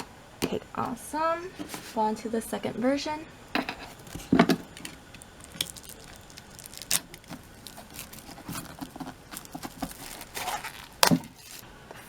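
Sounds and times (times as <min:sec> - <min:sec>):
cardboard and paper rustling: 0:03.6 - 0:12.0.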